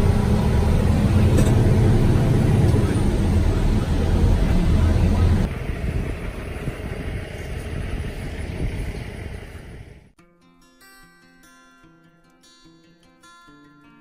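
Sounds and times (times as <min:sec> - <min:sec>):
truck engine drone: 0:00.0 - 0:10.1.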